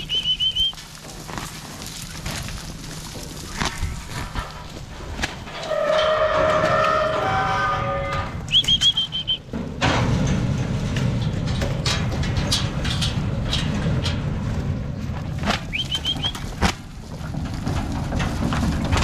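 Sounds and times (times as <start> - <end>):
cow mooing: 5.5 - 8.6
rattling clicks: 8.7 - 14.7.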